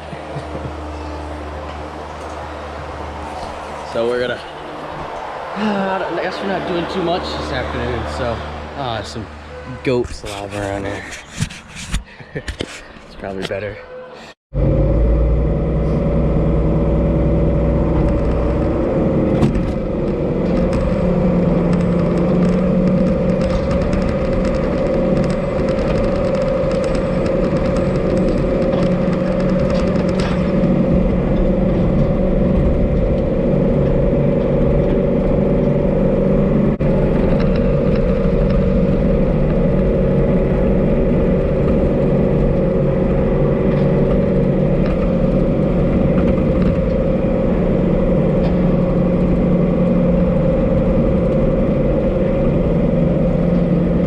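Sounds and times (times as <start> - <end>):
tractor diesel engine running: 14.6 - 54.0.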